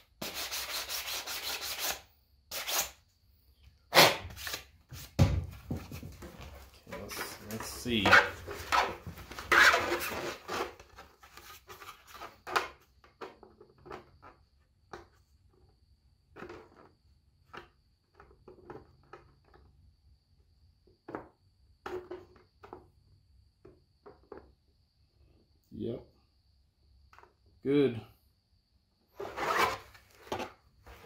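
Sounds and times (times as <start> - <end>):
plastic parts rubbing and scraping: 6.2 - 12.6.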